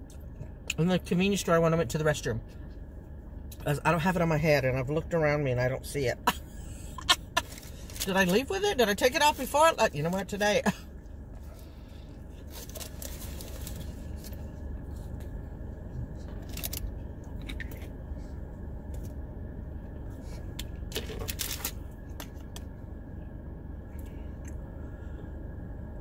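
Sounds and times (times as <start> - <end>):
car air conditioning blowing: 0.0 - 26.0
food packaging rustling: 12.4 - 14.4.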